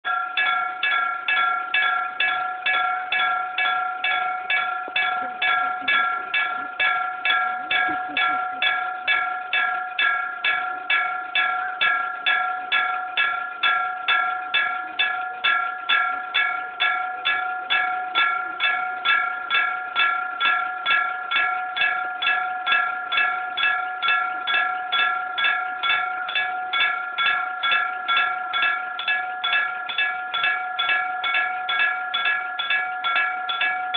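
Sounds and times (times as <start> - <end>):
level crossing bell ringing: 0.0 - 33.9.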